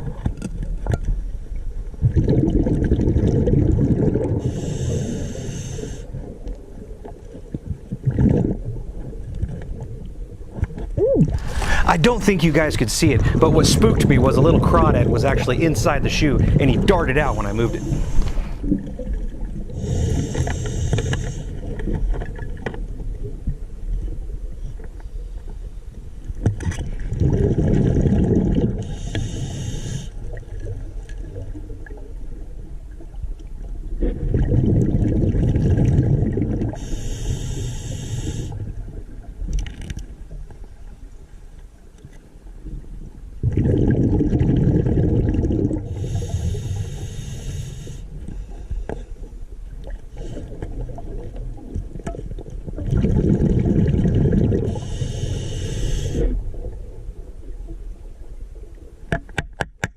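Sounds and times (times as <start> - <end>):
bubbling exhale: 2.3 - 6.1, 11.3 - 21.8, 43.5 - 48.7, 52.8 - 56.4
regulator inhale hiss: 4.4 - 6.1, 11.4 - 11.9, 17.2 - 18.7, 19.7 - 21.7, 28.8 - 30.2, 36.8 - 38.6, 45.9 - 49.1, 54.7 - 56.3.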